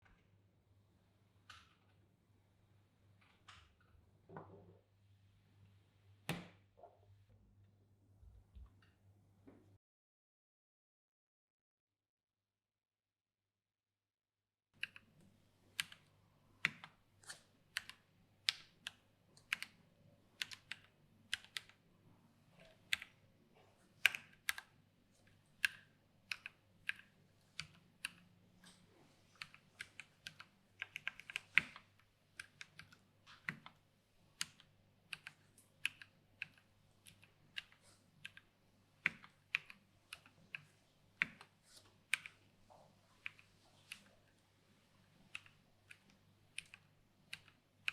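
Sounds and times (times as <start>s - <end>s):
mechanical keyboard typing: 17.7s - 21.8s, 24.0s - 24.8s, 25.4s - 28.3s, 29.3s - 42.4s, 45.2s - 47.9s.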